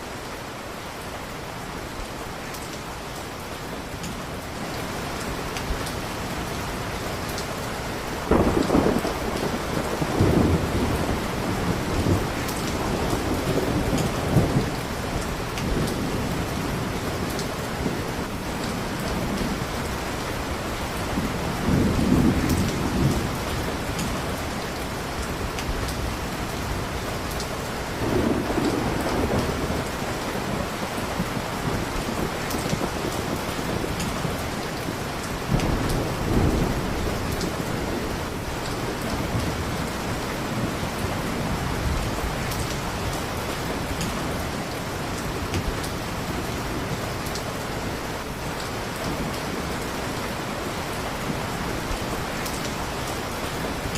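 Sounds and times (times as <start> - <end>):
heavy rain: 0.0 - 53.9
low thunder rolls: 8.3 - 14.8, 21.1 - 24.3, 28.0 - 43.2.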